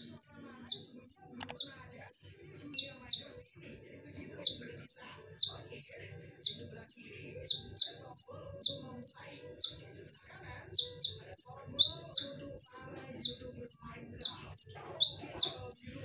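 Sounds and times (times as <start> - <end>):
songbird calling: 4.4 - 16.0.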